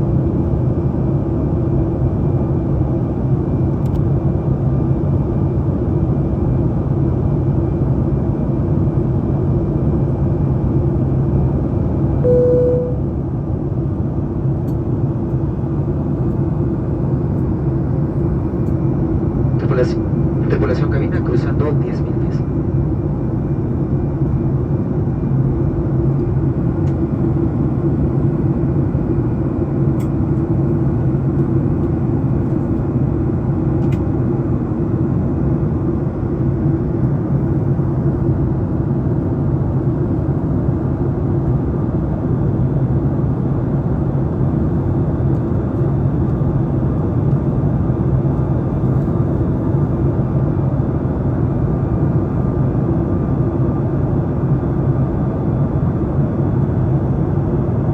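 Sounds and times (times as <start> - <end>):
airplane cabin drone: 0.0 - 57.9.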